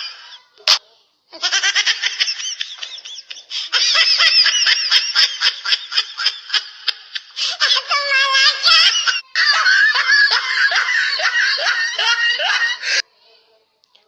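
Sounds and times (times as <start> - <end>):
high-pitched giggling laughter: 1.4 - 13.0.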